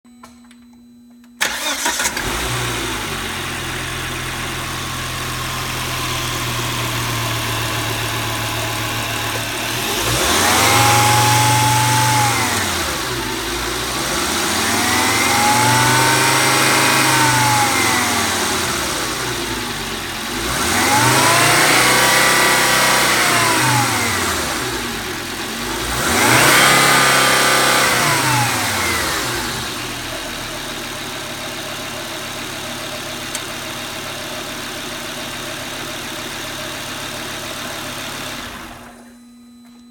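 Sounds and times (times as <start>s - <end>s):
car engine revving: 1.4s - 31.2s
car engine starting and idling: 1.4s - 39.9s.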